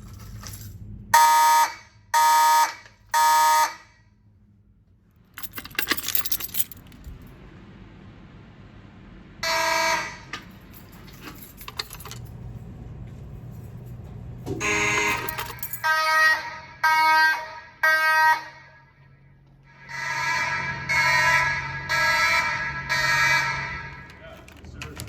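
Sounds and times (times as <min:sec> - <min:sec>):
fire alarm horn blasts: 0:01.1 - 0:04.0, 0:09.4 - 0:10.4, 0:14.6 - 0:24.2.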